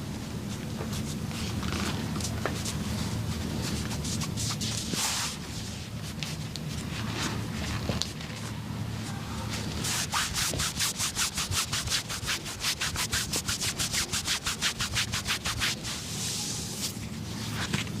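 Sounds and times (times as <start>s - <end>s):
rapid rubbing strokes: 9.6s - 17.6s.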